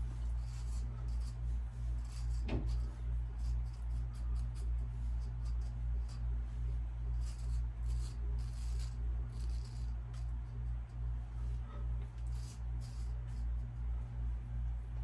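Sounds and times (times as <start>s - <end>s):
razor scraping stubble: 0.0s - 14.0s
steady low hum: 0.0s - 15.0s.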